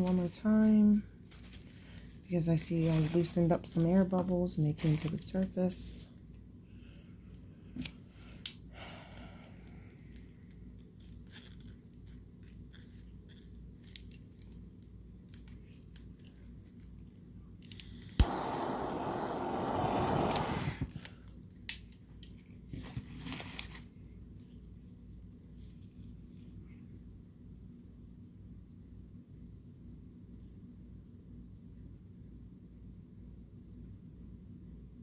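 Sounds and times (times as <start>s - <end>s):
torch hissing: 17.7s - 21.1s
torch ignition click: 17.7s - 21.1s.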